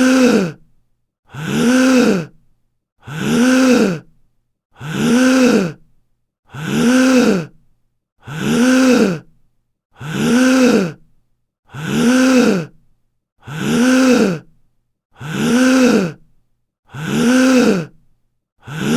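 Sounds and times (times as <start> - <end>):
man gasping: 0.0 - 0.7, 1.3 - 2.4, 3.0 - 4.2, 4.8 - 5.9, 6.5 - 7.6, 8.2 - 9.4, 10.0 - 11.1, 11.7 - 12.8, 13.4 - 16.3, 16.9 - 18.0, 18.6 - 18.9.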